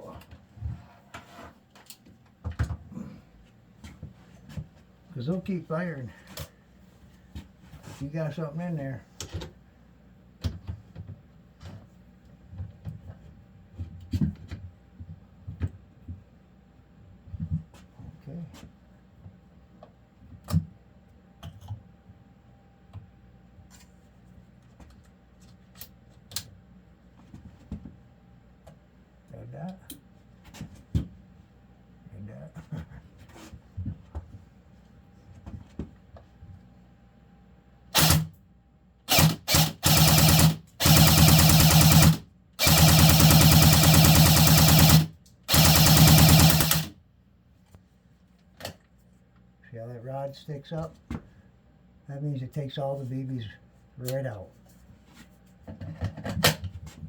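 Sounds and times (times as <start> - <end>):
bb gun rapid-fire clicking: 38.0 - 38.3, 39.1 - 46.9
electric motor buzz: 39.1 - 46.9.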